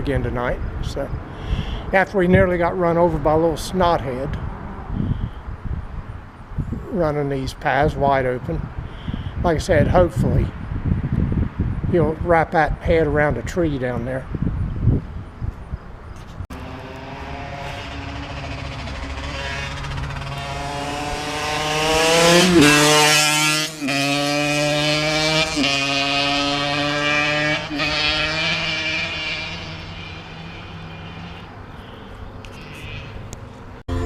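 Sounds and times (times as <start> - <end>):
engine accelerating through gears: 16.5 - 31.4.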